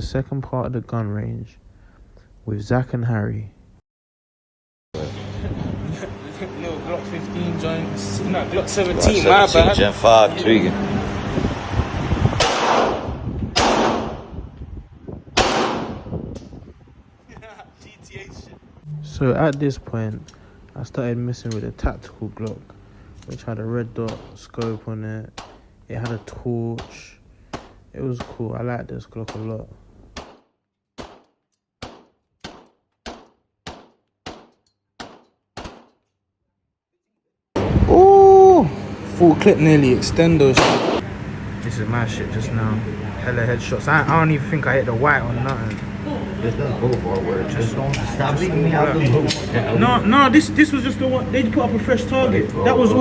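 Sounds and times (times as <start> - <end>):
pistol shots echoing: 12.4 - 13.0, 13.6 - 14.2, 15.4 - 16.0, 40.6 - 41.0
pistol shots: 12.4 - 14.3, 15.4 - 16.1, 30.2 - 30.4, 31.0 - 35.9, 40.6 - 41.0.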